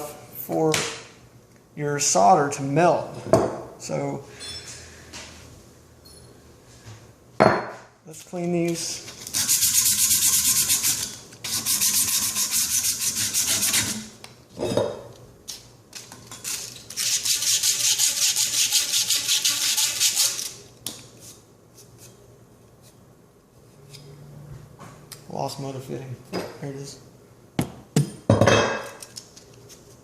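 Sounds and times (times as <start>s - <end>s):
abrasive scrubbing copper pipe: 9.2s - 14.1s, 17.0s - 20.5s.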